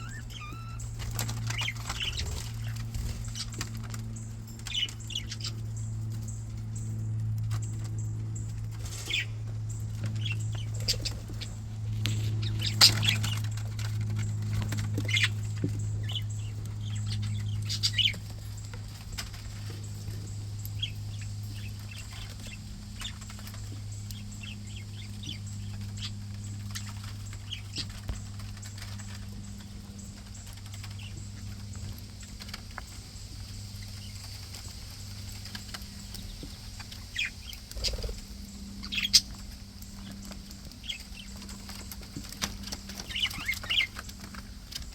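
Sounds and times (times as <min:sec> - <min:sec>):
budgerigars chirping: 0:00.0 - 0:03.7, 0:09.0 - 0:13.6, 0:14.8 - 0:18.6, 0:33.3 - 0:39.4, 0:42.9 - 0:44.1
steady low hum: 0:00.0 - 0:44.9.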